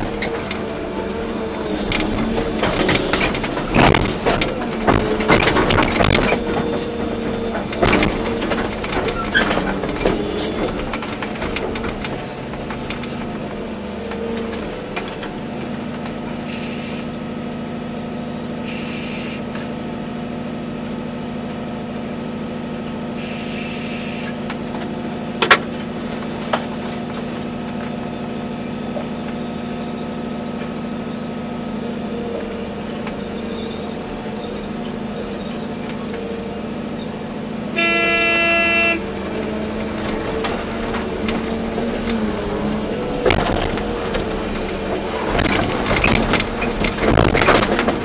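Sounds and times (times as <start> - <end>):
metal clanks and knocks: 0.0 - 16.2, 39.0 - 48.0
excavator diesel engine under load: 0.0 - 48.0.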